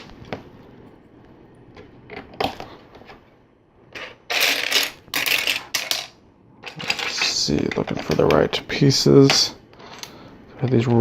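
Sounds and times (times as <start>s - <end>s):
plastic bricks clattering: 4.0s - 8.4s.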